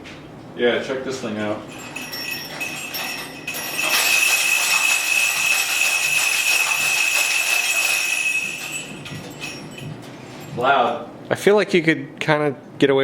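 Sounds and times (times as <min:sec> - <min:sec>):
many small bells jingling: 0:01.6 - 0:11.0
clear ringing bell tone: 0:01.6 - 0:11.1.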